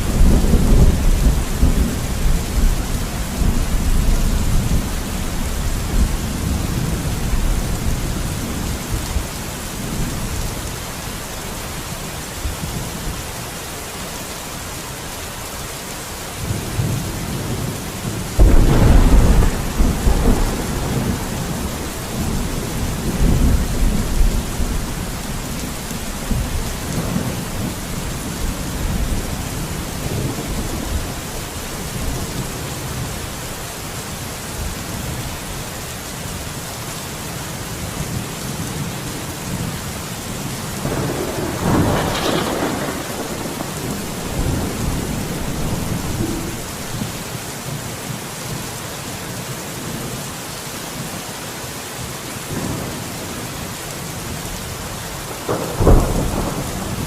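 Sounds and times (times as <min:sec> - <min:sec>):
thunder rumbling: 0:00.0 - 0:10.6, 0:16.4 - 0:33.2, 0:40.8 - 0:47.2, 0:55.3 - 0:57.0
steady rain: 0:00.0 - 0:57.0.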